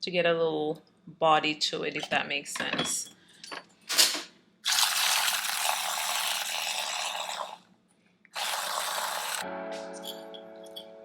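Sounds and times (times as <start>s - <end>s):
kitchen tap running: 4.6s - 7.6s, 8.4s - 9.4s.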